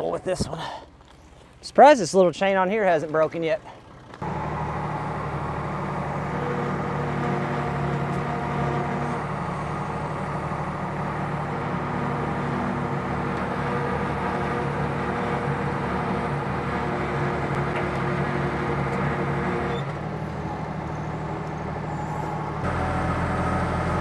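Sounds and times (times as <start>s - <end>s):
diesel engine running: 3.6s - 24.0s.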